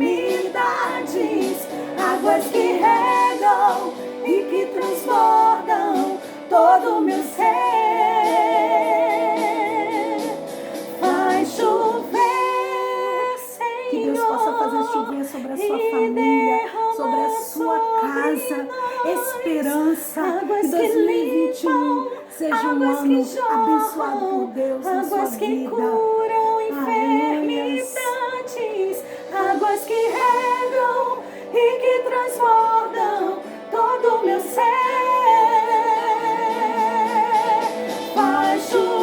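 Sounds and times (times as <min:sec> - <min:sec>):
women singing gospel song: 0:00.0 - 0:39.0.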